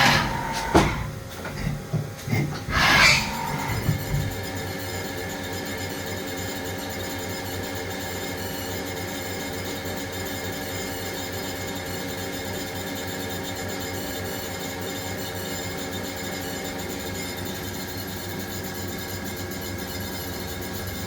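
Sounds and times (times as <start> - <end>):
lathe running: 0.0 - 1.3, 2.5 - 4.4.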